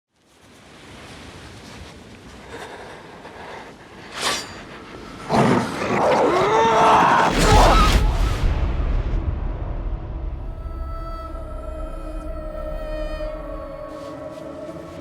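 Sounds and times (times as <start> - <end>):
deep low boom: 7.4 - 13.5.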